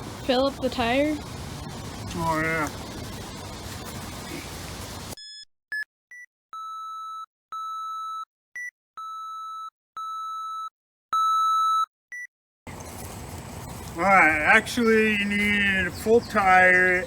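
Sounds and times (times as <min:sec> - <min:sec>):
single-pitched electronic beeps: 0:05.2 - 0:12.3.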